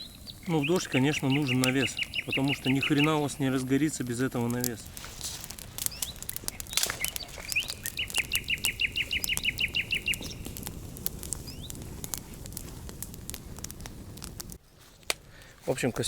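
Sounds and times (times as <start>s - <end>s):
bird singing a rapid trill: 0.0s - 3.4s, 5.9s - 10.4s
campfire crackling and popping: 0.0s - 16.0s.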